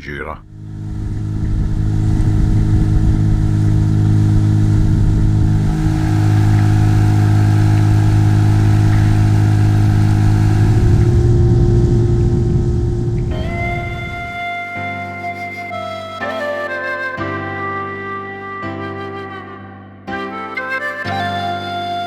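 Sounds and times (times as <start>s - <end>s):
outboard motor running: 0.4s - 14.3s.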